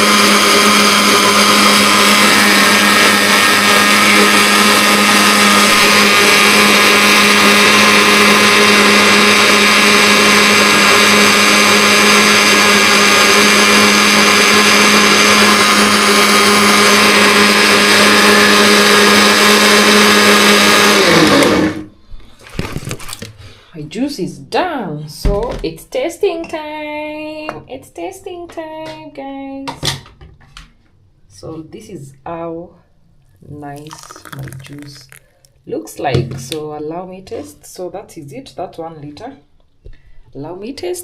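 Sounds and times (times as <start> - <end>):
blender running: 0.0 - 21.9, 33.4 - 35.4.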